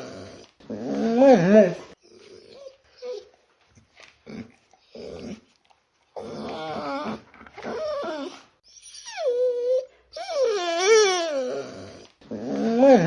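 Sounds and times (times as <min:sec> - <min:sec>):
small dog whining: 0:00.0 - 0:03.4, 0:06.2 - 0:13.0.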